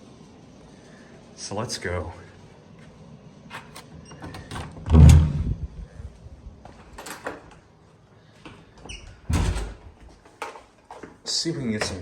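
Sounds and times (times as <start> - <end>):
heavy door thud: 4.2 - 5.8, 9.3 - 10.0.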